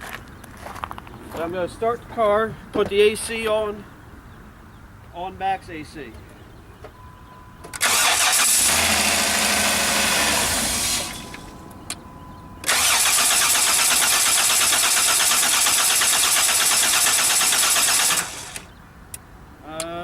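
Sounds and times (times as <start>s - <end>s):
car engine starting and cranking: 7.7s - 18.8s.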